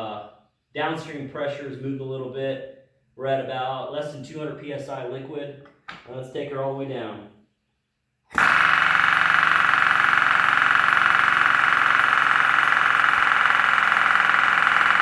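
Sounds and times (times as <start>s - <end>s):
pneumatic air hammer rattling: 8.3s - 15.0s.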